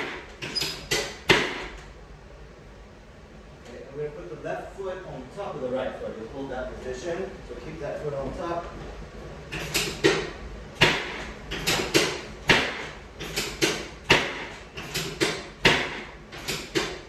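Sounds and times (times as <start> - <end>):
sharp knocks: 0.0 - 1.8, 9.5 - 17.0.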